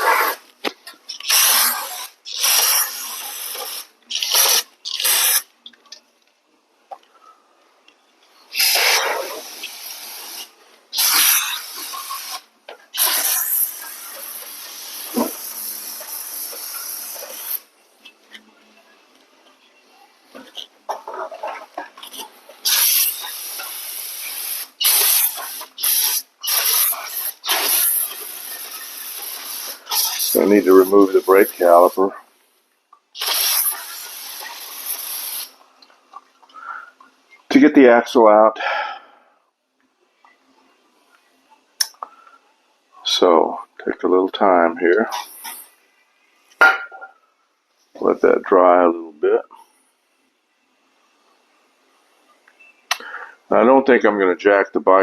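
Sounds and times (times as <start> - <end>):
cleaner spray bursts: 1.1 - 5.5, 8.5 - 17.7, 22.0 - 32.1, 33.2 - 35.6.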